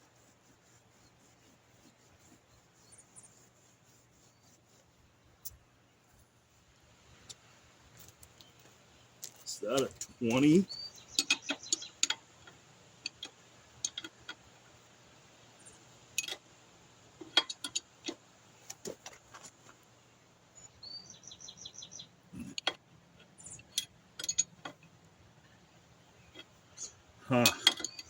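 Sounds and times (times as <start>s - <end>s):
bird chirping: 2.0s - 4.8s, 9.6s - 12.1s, 20.6s - 22.6s, 23.3s - 23.8s, 25.4s - 28.0s
hand tools clinking: 23.4s - 24.8s, 27.3s - 28.0s.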